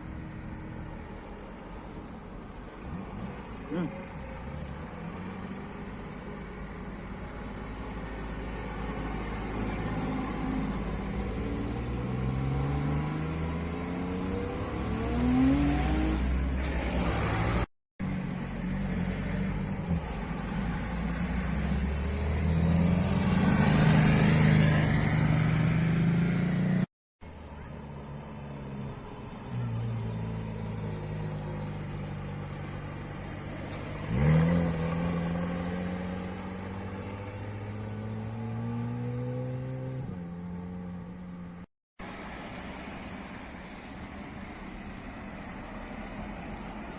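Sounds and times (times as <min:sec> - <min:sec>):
car engines revving: 0:00.0 - 0:46.9.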